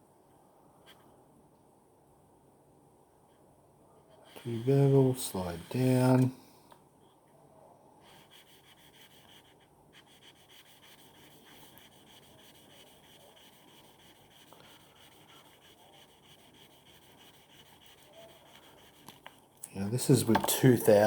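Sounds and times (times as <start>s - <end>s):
blade rubbing on sandpaper: 10.1s - 19.2s.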